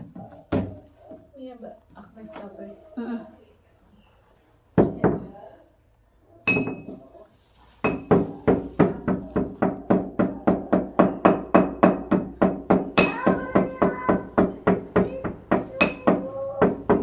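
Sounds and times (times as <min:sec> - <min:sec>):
hard hammer-like knocks: 0:07.9 - 0:17.0.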